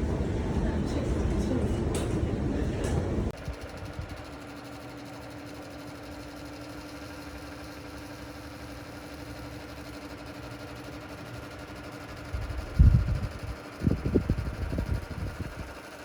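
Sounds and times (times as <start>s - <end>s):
motor humming: 0.0s - 16.0s.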